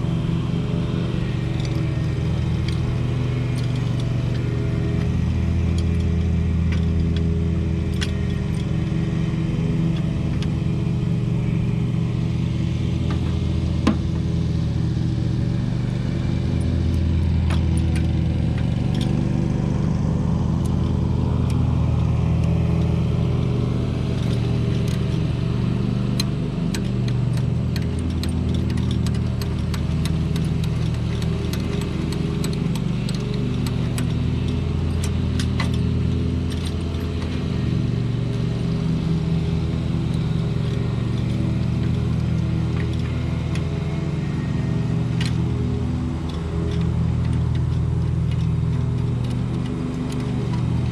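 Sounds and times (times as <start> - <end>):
engine running steadily: 0.0 - 50.9
light clicks and taps: 26.2 - 35.8.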